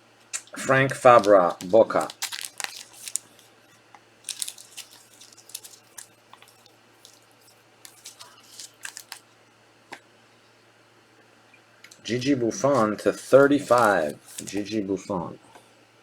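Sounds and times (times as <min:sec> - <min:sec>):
faint low hum: 0:00.0 - 0:16.0
cards rustling and clicking: 0:00.6 - 0:03.5, 0:04.2 - 0:09.2, 0:12.6 - 0:15.0.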